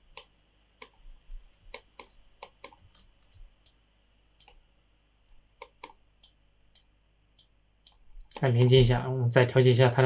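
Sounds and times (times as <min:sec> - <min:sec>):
computer mouse clicking: 0:00.1 - 0:01.0, 0:01.7 - 0:03.8, 0:04.4 - 0:04.6, 0:05.6 - 0:08.6.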